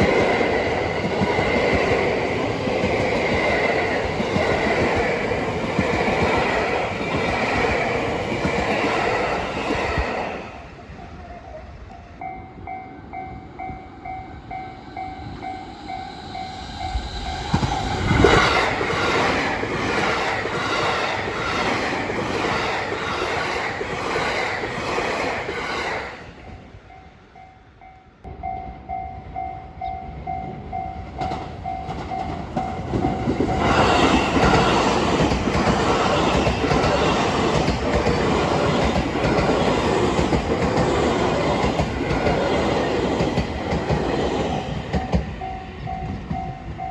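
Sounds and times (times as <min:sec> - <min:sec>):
level-crossing bell dinging: 0:12.0 - 0:17.6
train wheels clacking over rail joints: 0:31.2 - 0:46.5.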